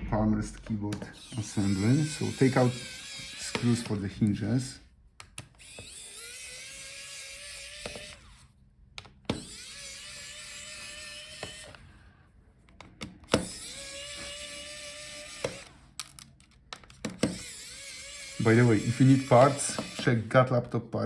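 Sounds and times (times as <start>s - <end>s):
electric screwdriver motor whine: 1.2s - 4.1s, 5.5s - 8.4s, 9.3s - 11.8s, 13.3s - 16.2s, 17.2s - 20.3s.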